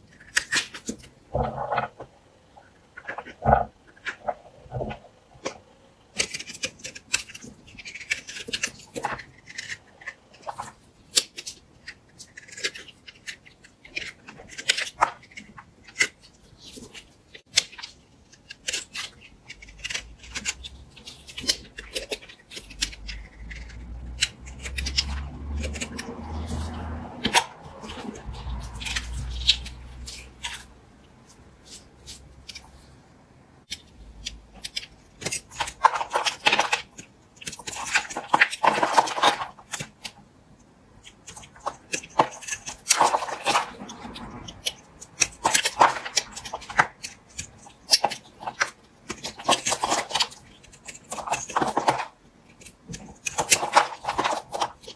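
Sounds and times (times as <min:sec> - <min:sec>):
knife cutting bar soap: 0:00.1 - 0:02.0, 0:06.2 - 0:30.8, 0:33.7 - 0:40.2, 0:41.0 - 0:54.9.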